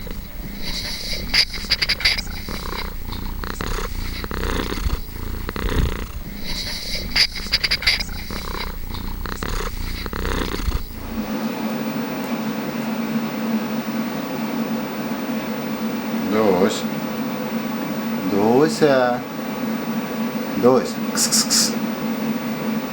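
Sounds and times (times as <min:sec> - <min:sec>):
cat purring: 0:00.0 - 0:11.4
steady low hum: 0:00.0 - 0:18.5.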